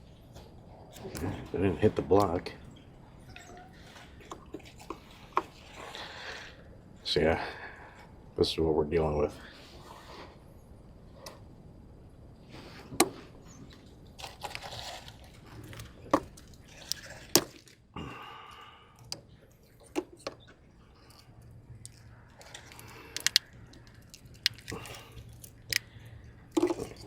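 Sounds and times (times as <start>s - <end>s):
sharp clicks and knocks: 22.6s - 25.9s.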